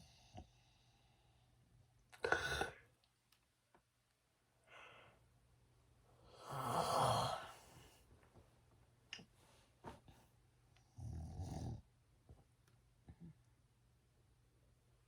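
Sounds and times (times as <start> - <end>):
faint breath: 4.6 - 5.3
snoring: 6.4 - 7.6, 10.9 - 11.8.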